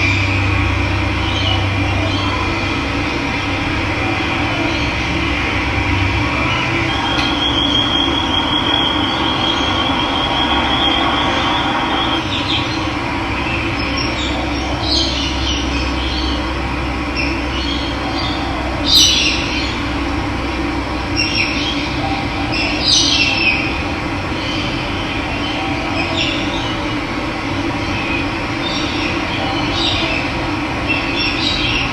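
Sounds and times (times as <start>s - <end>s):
birds chirping: 0.0s - 19.9s.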